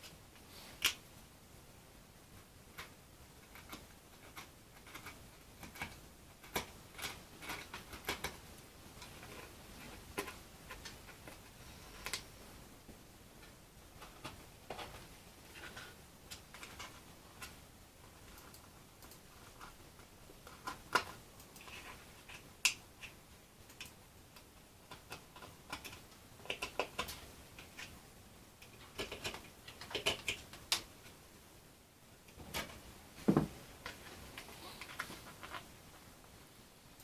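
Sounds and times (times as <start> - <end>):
knocks on workbench: 33.3 - 33.6.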